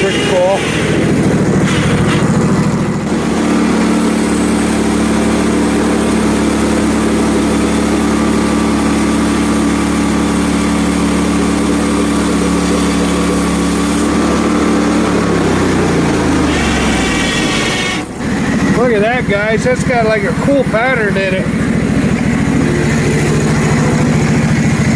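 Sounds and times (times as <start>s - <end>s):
saw blade cutting wood: 0.0s - 7.4s, 11.4s - 19.0s
gasoline engine running: 0.0s - 24.9s.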